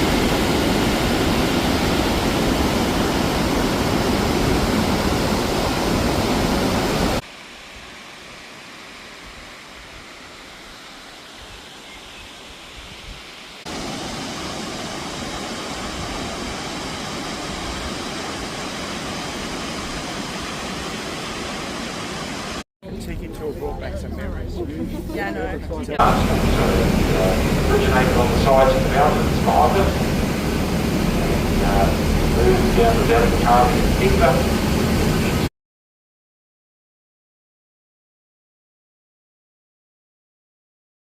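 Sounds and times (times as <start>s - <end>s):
rush of falling water: 0.0s - 22.6s, 26.0s - 35.5s.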